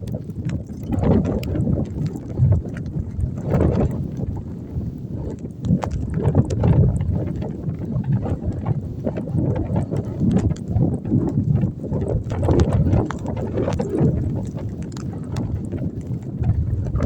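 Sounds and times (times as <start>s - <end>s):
wind buffeting microphone: 0.0s - 17.0s
light knocks and crunches: 9.4s - 17.0s.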